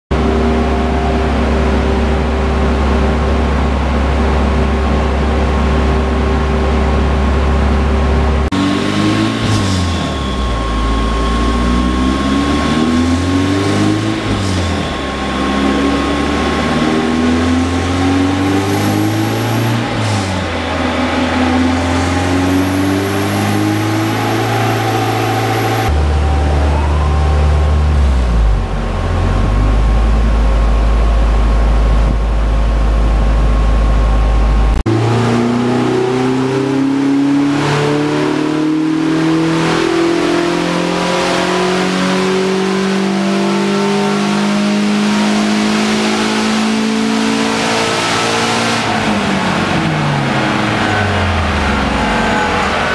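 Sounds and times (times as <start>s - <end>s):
car engine revving under load: 0.1s - 32.2s, 34.6s - 52.9s.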